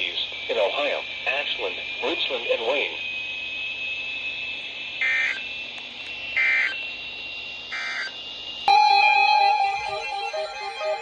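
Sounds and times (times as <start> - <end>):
digital data tone bursts: 5.0 - 5.5, 6.4 - 6.8, 7.7 - 11.0
music: 8.7 - 11.0.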